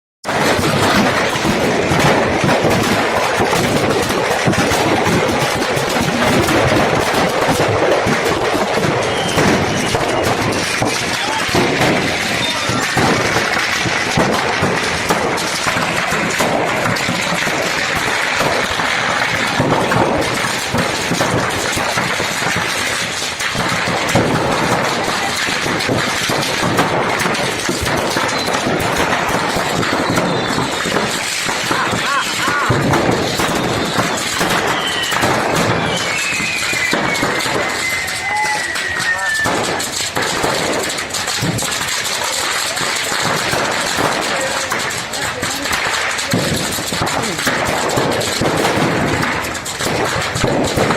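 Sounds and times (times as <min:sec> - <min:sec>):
firecrackers crackling and popping: 0:00.2 - 0:50.9
crowd talking and shouting: 0:00.3 - 0:50.9
long falling whistle: 0:34.6 - 0:39.4.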